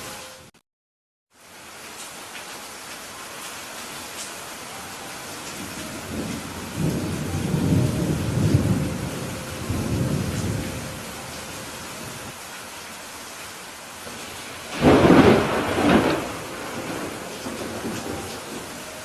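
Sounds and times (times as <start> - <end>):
steady rain falling: 1.3 - 19.0
thunder rolling: 5.6 - 12.3, 14.2 - 18.9.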